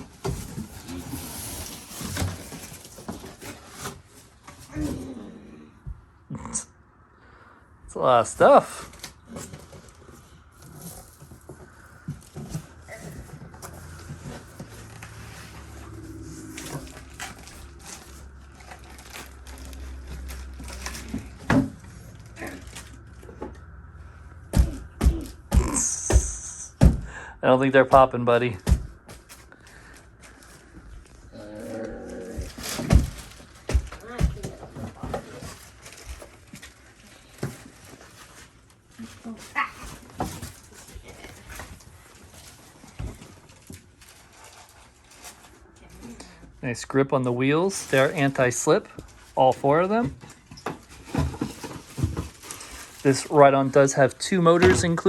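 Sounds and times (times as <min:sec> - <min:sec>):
cardboard and plastic rustling: 0:00.0 - 0:06.1, 0:08.5 - 0:25.6, 0:26.2 - 0:55.0
knocks and thuds: 0:24.4 - 0:27.2, 0:28.6 - 0:29.2, 0:32.8 - 0:35.2.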